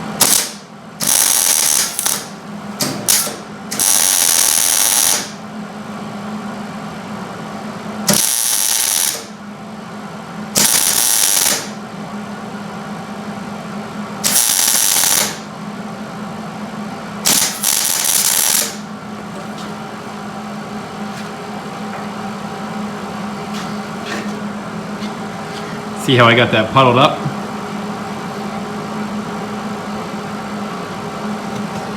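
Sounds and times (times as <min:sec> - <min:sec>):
steady low hum: 0:11.6 - 0:31.9.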